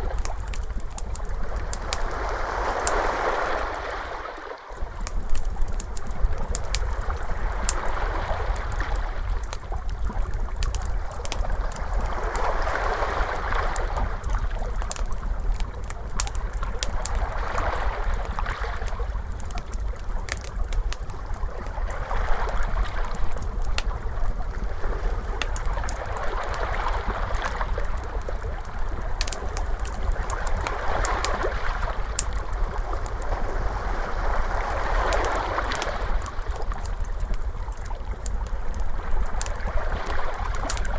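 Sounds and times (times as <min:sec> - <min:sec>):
wood fire crackling: 0:00.0 - 0:04.0, 0:04.7 - 0:40.9
ocean waves washing: 0:01.2 - 0:05.6, 0:10.8 - 0:15.0, 0:24.7 - 0:37.2.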